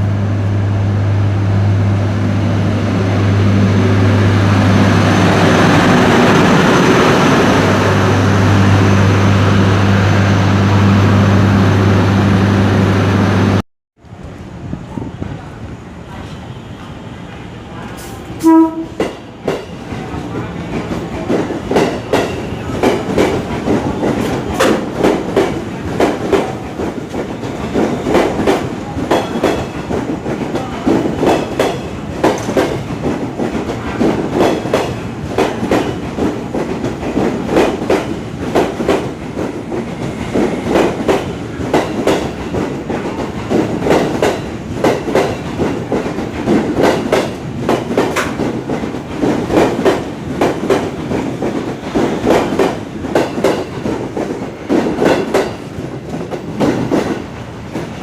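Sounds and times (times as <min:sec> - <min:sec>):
train horn: 0:18.0 - 0:19.1
train wheels clattering over rail joints: 0:20.7 - 0:58.0.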